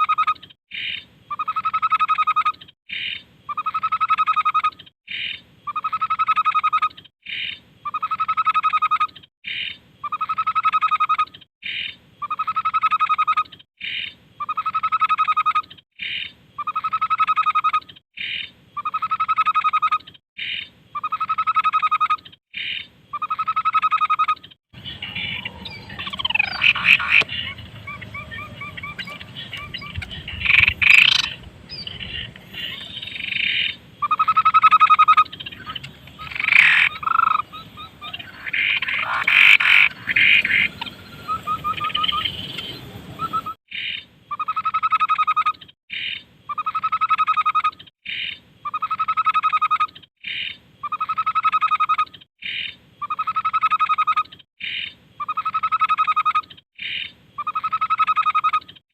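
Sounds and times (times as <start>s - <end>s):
bird singing trills and whistles: 24.8s - 44.0s.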